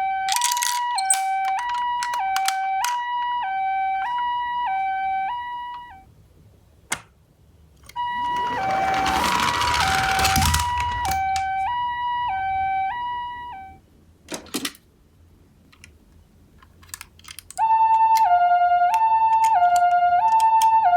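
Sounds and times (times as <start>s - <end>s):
ambulance two-tone siren: 0.0s - 6.1s, 8.0s - 13.8s, 17.6s - 20.9s
toy cars rolling and clattering: 0.1s - 3.0s, 7.8s - 11.7s, 16.6s - 17.7s
toy cars clicking together: 0.2s - 3.0s, 7.8s - 11.6s, 16.6s - 20.8s.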